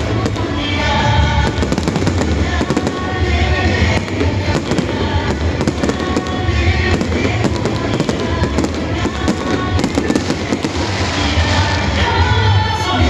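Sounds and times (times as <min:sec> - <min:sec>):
fireworks bangs and crackles: 0:00.0 - 0:12.8
music playing: 0:00.0 - 0:13.0.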